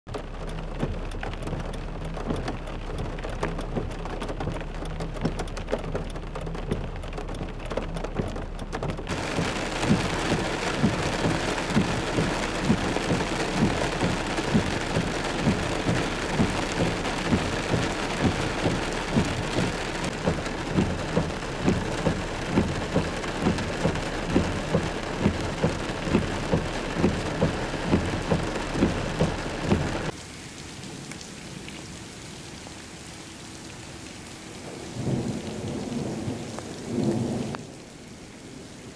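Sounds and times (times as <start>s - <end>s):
raindrop clicks: 0.1s - 32.0s, 33.4s - 37.8s
heavy rain pouring: 0.1s - 38.9s
regular knocking beat: 0.2s - 30.2s.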